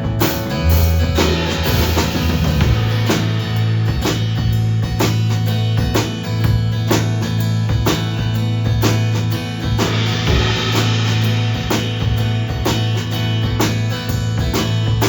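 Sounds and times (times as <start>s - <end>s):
bass notes: 0.0s - 15.0s
drum kit beat: 0.0s - 15.0s
guitar: 0.0s - 15.0s.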